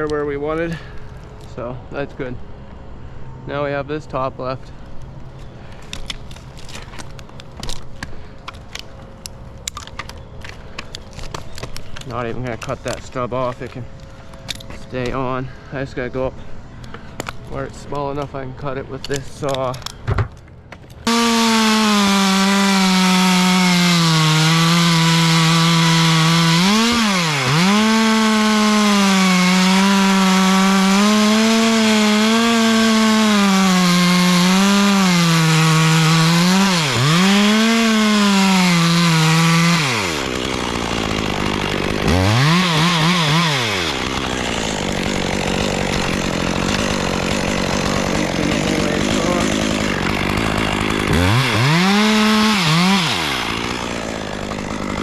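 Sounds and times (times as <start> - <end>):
chainsaw cutting wood: 21.0 - 55.0.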